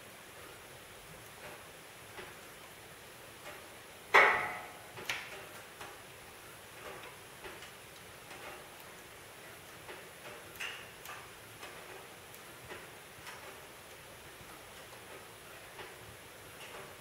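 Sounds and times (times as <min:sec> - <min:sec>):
wood fire crackling: 0:00.5 - 0:17.0
loud sharp pop: 0:04.2 - 0:04.7.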